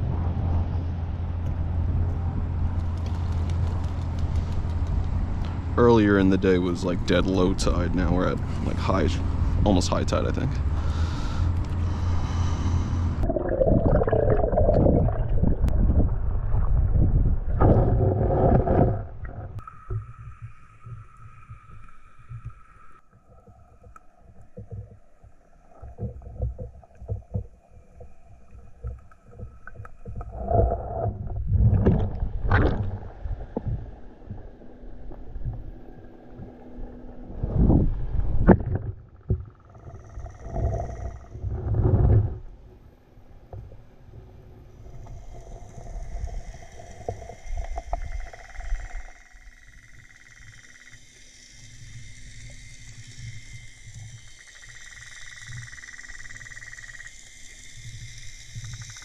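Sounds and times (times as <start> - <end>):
faint steady tones: 19.2 - 30.4, 42.4 - 59.0.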